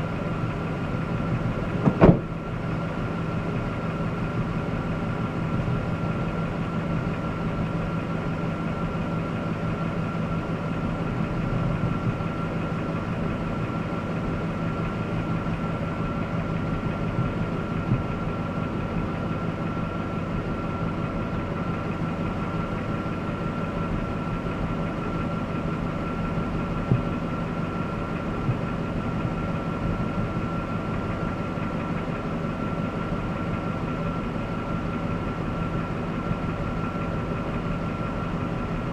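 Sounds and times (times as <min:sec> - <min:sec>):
engine running: 0:00.0 - 0:38.9.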